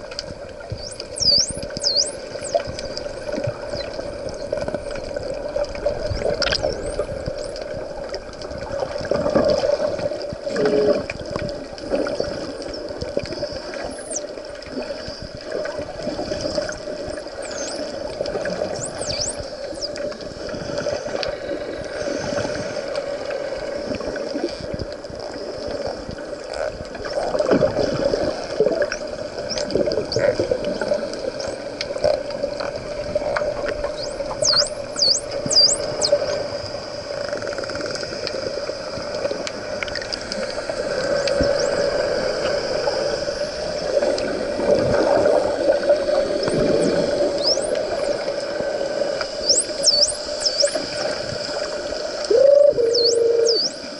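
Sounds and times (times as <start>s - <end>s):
water swishing and bubbling: 0.0s - 53.9s
dolphins whistling underwater: 0.6s - 5.0s, 6.0s - 7.6s, 13.8s - 14.4s, 16.5s - 20.1s, 33.8s - 36.7s, 41.1s - 43.0s, 46.4s - 48.5s, 49.3s - 51.2s, 52.1s - 53.9s.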